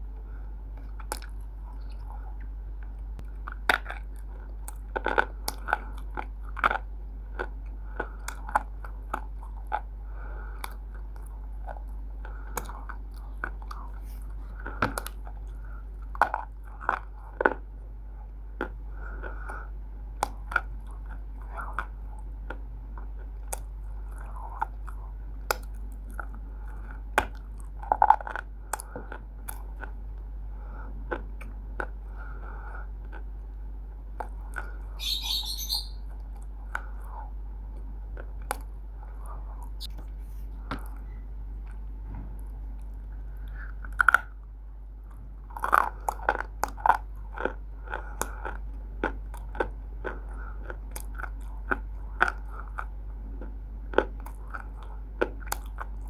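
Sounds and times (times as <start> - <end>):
chewing with sharp crunches: 0.1 - 56.0
low hum: 30.0 - 45.5.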